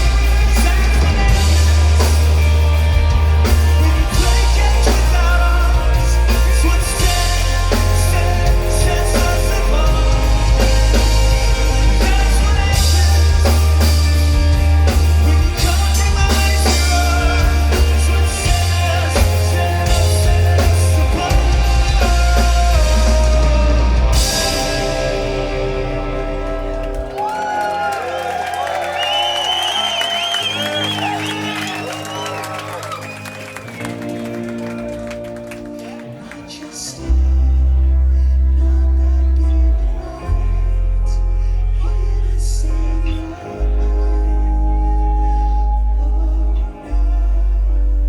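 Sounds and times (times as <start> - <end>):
person singing: 0.0 - 28.2, 35.1 - 48.0
drum kit: 0.0 - 36.0
bass guitar: 0.0 - 48.0
electric guitars: 0.0 - 48.0.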